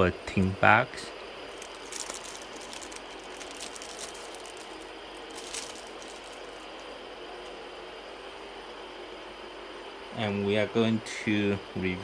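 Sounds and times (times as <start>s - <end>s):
steady background hum: 0.0s - 12.0s
handling clicks and rustles: 1.5s - 7.6s.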